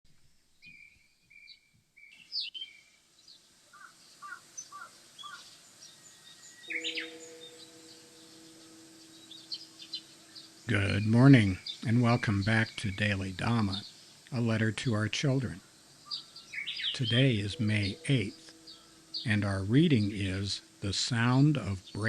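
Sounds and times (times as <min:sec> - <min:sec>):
high bird chirps: 0:03.7 - 0:14.4, 0:15.5 - 0:20.9
bird paired lower notes: 0:04.3 - 0:22.0
steady low hum: 0:04.4 - 0:22.0
bird whistled notes: 0:04.8 - 0:12.8.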